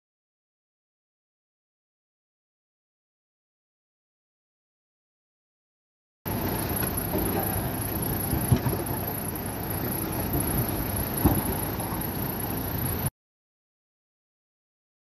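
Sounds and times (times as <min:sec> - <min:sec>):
diesel engine running: 0:06.3 - 0:13.1
thin high whine: 0:06.3 - 0:13.1.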